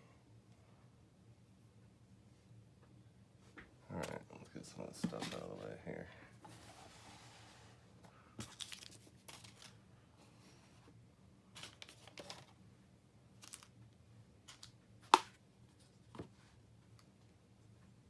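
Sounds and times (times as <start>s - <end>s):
packaging rustling and crinkling: 8.4s - 9.8s, 11.6s - 12.5s, 13.4s - 13.7s.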